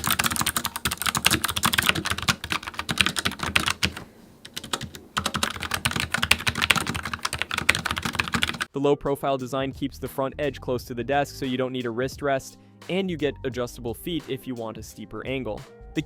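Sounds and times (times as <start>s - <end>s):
fast typing on mechanical keyboard: 0.0s - 8.7s.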